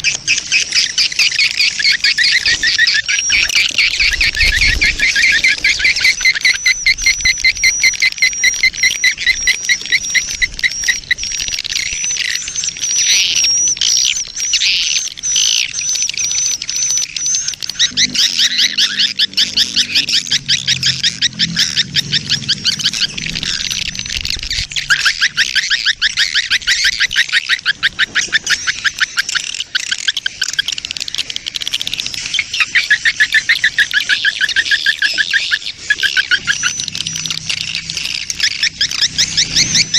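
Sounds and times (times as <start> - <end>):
swiftlets chirping twitters: 0.0 - 39.9
thin high whistle: 17.4 - 25.9.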